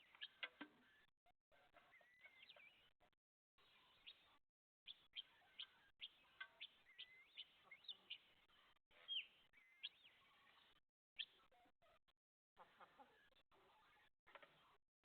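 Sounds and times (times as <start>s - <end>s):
faint bird chirping: 0.0s - 12.0s, 12.6s - 14.8s
gliding bird calls: 3.6s - 11.6s.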